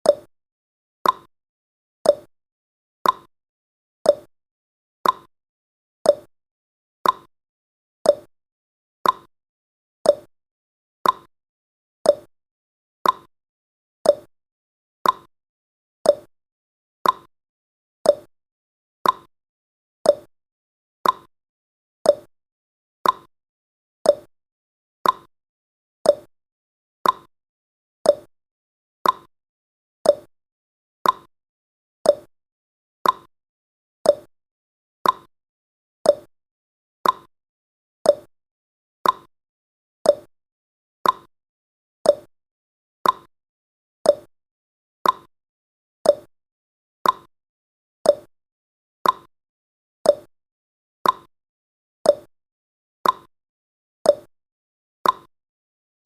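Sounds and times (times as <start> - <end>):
timer ticking: 0.0 - 0.3, 1.0 - 1.3, 2.1 - 2.3, 3.0 - 3.3, 4.1 - 4.3, 5.0 - 5.3, 6.1 - 6.3, 7.0 - 7.3, 8.1 - 8.3, 9.0 - 9.3, 10.1 - 10.3, 11.0 - 11.3, 12.1 - 12.3, 13.0 - 13.3, 14.0 - 14.3, 15.0 - 15.3, 16.1 - 16.3, 17.0 - 17.3, 18.1 - 18.3, 19.0 - 19.3, 20.1 - 20.3, 21.0 - 21.3, 22.1 - 22.3, 23.0 - 23.3, 24.1 - 24.3, 25.0 - 25.3, 26.1 - 26.3, 27.0 - 27.3, 28.0 - 28.3, 29.0 - 29.3, 30.0 - 30.3, 31.0 - 31.3, 32.0 - 32.3, 33.0 - 33.3, 34.1 - 34.3, 35.0 - 35.3, 36.0 - 36.3, 37.0 - 37.3, 38.1 - 38.3, 39.0 - 39.3, 40.1 - 40.3, 41.0 - 41.3, 42.1 - 42.3, 43.0 - 43.3, 44.1 - 44.3, 45.0 - 45.3, 46.1 - 46.3, 47.0 - 47.3, 48.1 - 48.3, 49.0 - 49.3, 50.1 - 50.3, 51.0 - 51.3, 52.1 - 52.3, 53.0 - 53.3, 54.1 - 54.3, 55.0 - 55.3.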